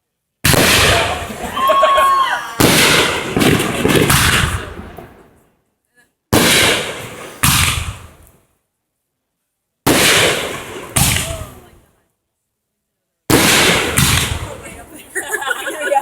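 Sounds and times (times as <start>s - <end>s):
fireworks bangs: 0.5s - 5.4s, 6.3s - 8.4s, 9.9s - 11.8s, 13.3s - 16.0s.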